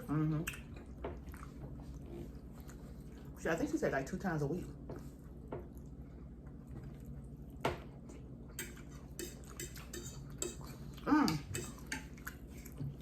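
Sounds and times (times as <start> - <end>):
forks clinking on plates: 11.3 - 12.1.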